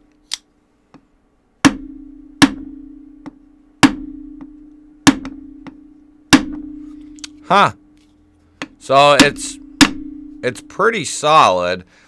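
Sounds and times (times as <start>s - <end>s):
knife spine striking hard surface: 8.9s - 10.7s.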